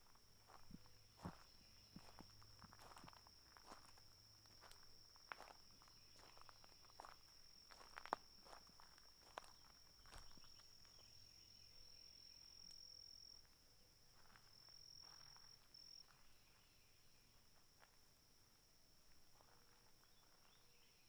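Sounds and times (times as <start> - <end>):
footsteps crunching on trail: 0.0 - 11.1, 14.1 - 16.6, 19.1 - 20.9
high-pitched insect trill: 0.4 - 13.5.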